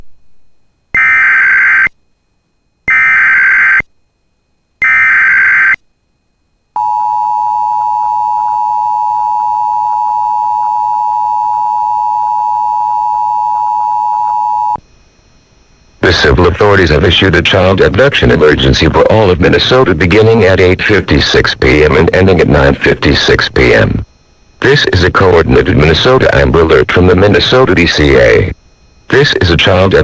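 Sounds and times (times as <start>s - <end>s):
steady attention tone: 1.0s - 2.0s, 2.8s - 3.9s, 4.8s - 5.8s, 6.8s - 30.0s
digital data screech bursts: 2.9s - 3.8s, 4.8s - 5.8s.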